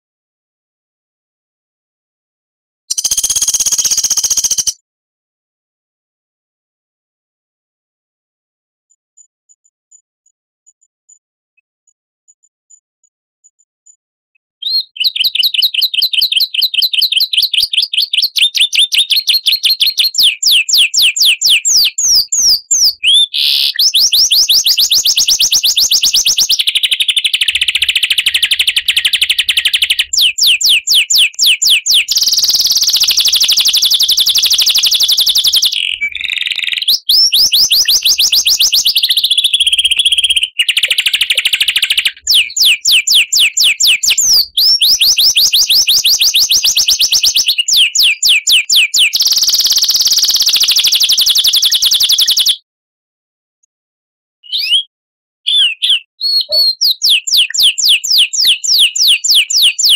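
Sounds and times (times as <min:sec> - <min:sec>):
songbird trills: 0:02.9 - 0:04.8, 0:14.6 - 0:51.0.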